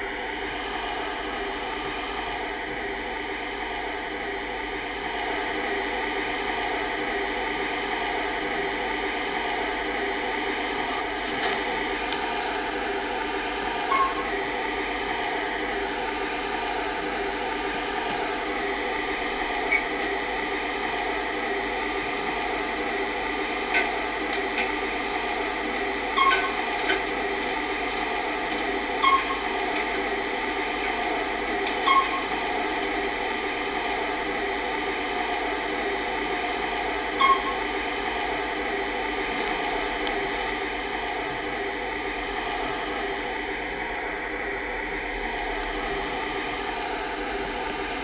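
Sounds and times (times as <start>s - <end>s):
lift hum: 0.0s - 48.0s
short beeps: 13.9s - 14.3s, 37.2s - 37.6s.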